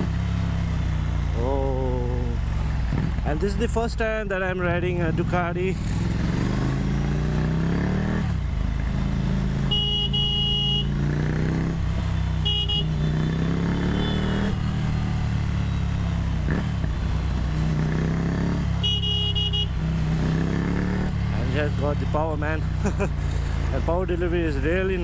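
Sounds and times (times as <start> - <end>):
motorcycle engine revving: 0.0 - 3.8, 4.4 - 25.0
vehicle horn honking: 9.6 - 10.9, 12.4 - 13.2, 13.8 - 14.5, 18.8 - 19.8.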